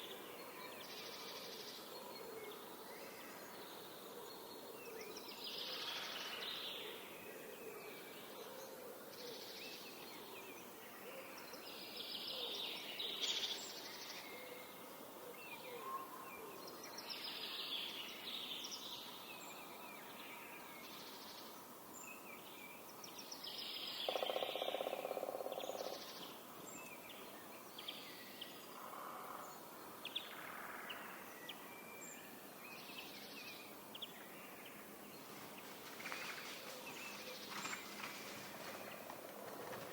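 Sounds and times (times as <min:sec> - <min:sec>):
woodpecker drumming: 0:24.1 - 0:25.9.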